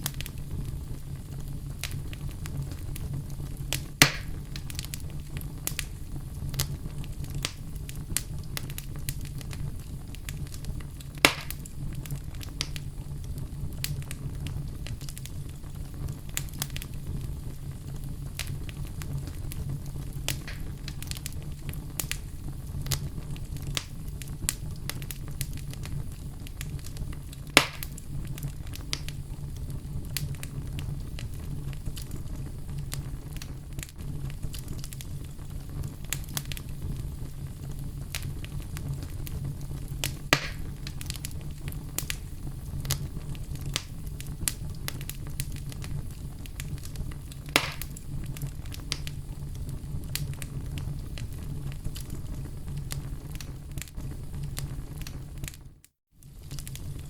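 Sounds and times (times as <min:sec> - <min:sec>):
loud fire snaps: 0:00.0 - 0:57.0
wood fire crackling: 0:00.0 - 0:57.0.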